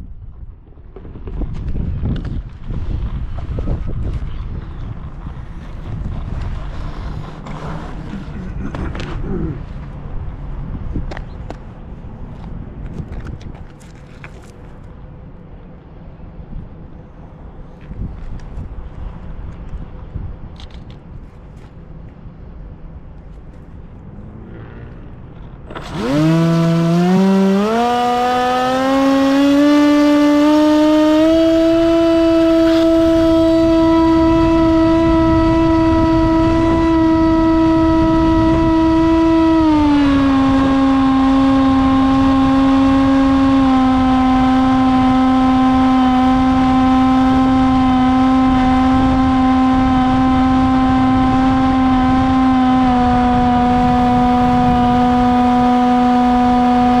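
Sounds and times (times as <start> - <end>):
electric motor and propeller whine: 1.0 - 9.8, 24.2 - 57.0.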